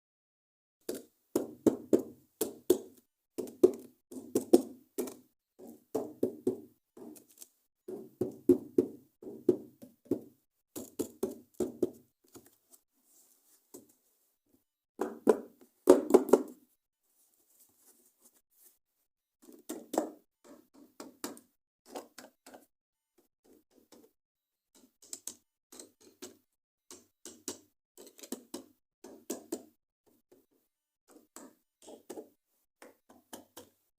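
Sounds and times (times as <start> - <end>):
hands tapping toys and packaging: 0.8 - 12.8, 15.0 - 16.7, 19.4 - 22.7, 24.8 - 29.8, 31.1 - 33.8.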